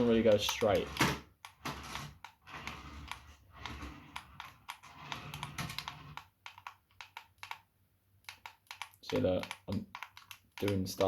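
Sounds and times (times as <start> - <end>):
toy car motor whirring: 0.4 - 6.3.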